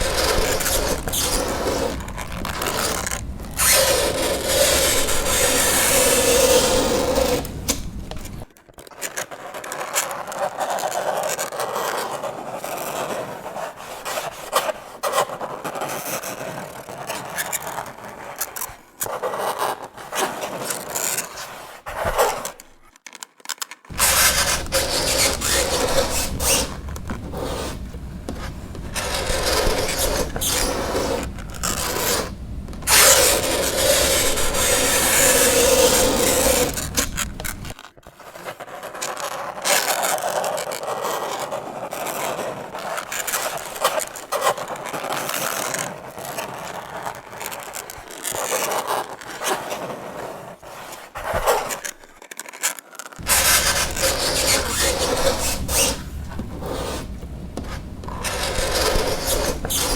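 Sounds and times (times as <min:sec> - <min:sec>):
fingernails scraping chalkboard: 0:00.0 - 0:08.4, 0:23.9 - 0:39.6, 0:48.3 - 0:51.9, 0:53.2 - 0:59.9.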